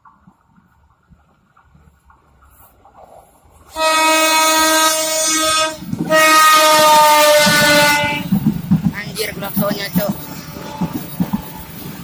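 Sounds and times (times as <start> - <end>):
wheezy train air horn blasts: 3.7 - 8.4, 10.2 - 11.7.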